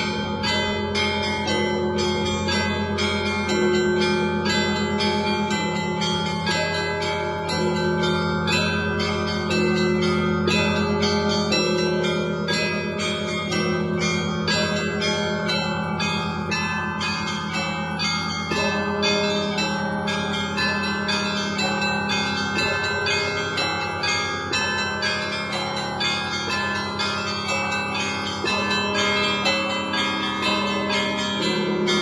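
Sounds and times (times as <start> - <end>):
hum of large bells: 0.0 - 32.0.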